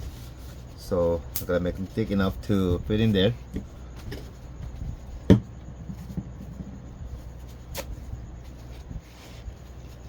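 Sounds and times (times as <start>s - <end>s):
paper towel rustling: 7.1s - 10.0s.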